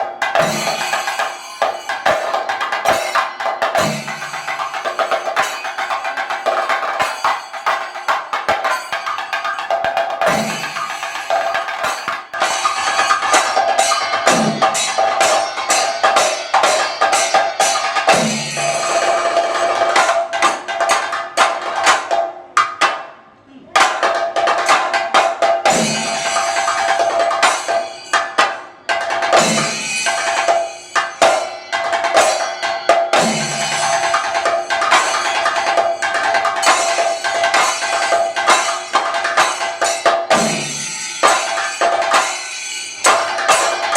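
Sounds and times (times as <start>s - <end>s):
cymbals ringing: 0.0s - 21.1s, 25.6s - 43.9s
drums beaten with sticks: 0.0s - 43.9s.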